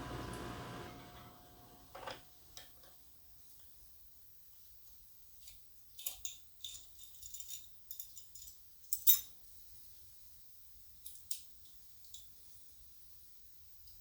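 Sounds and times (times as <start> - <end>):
small hard objects clinking: 6.0 - 9.2.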